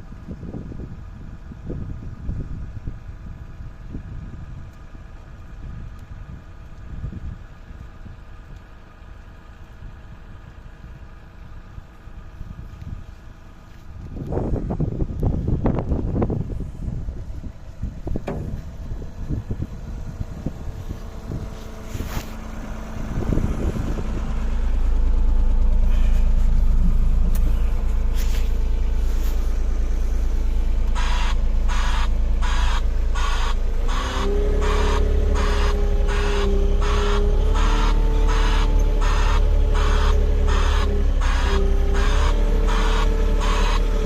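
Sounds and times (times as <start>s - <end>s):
machine motor humming: 19.9s - 44.0s
regular pulsing: 20.2s - 43.9s.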